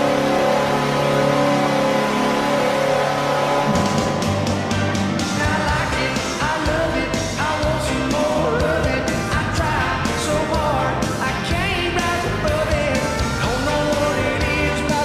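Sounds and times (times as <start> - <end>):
goal horn: 0.0 - 5.7
rock song with sung vocal: 3.6 - 15.0.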